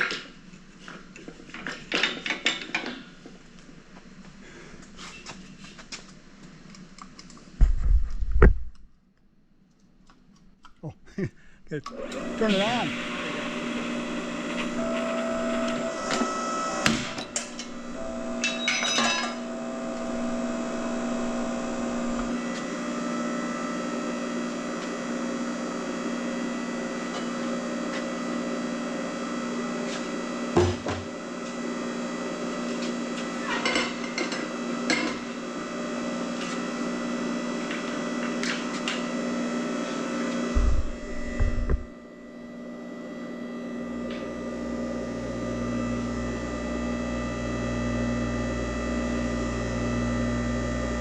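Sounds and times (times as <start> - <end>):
power tool motor humming: 11.9 - 28.5, 34.9 - 51.0.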